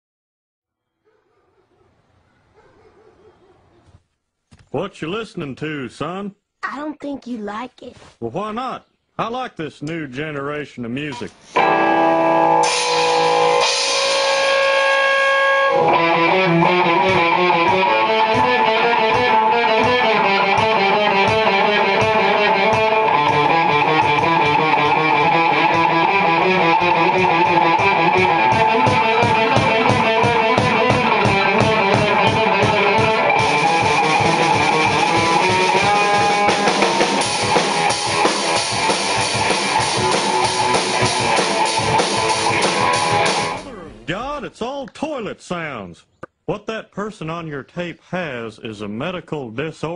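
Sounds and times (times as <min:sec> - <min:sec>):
electric guitar: 0:11.3 - 0:44.1
drum beat: 0:16.6 - 0:44.5.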